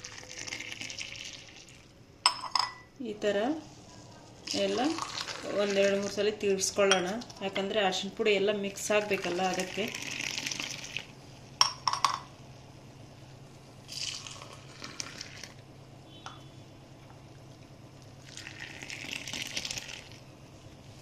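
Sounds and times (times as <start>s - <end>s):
milk pouring in a stream: 18.2s - 20.2s.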